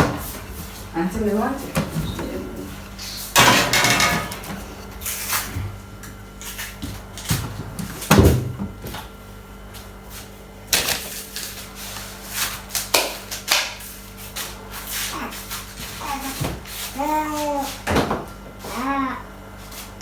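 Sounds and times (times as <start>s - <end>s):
low electrical hum: 0.0s - 20.0s
items knocking on worktop: 3.4s - 4.6s.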